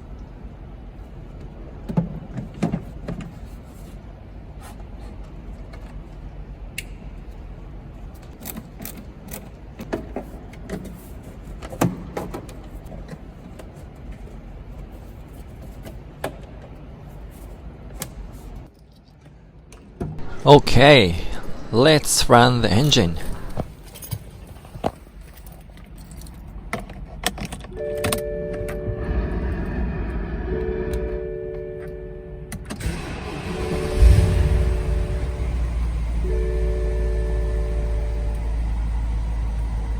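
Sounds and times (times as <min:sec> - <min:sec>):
steady low hum: 0:20.2 - 0:24.8, 0:27.8 - 0:39.9.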